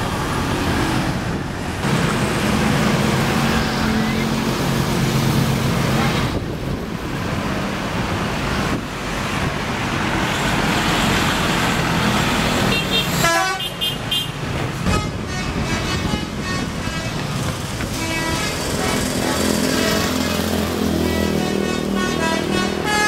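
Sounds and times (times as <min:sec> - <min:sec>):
bus engine: 0:00.0 - 0:23.0
road noise: 0:00.0 - 0:23.0
musical bus horn tune: 0:12.7 - 0:19.1, 0:19.7 - 0:23.0.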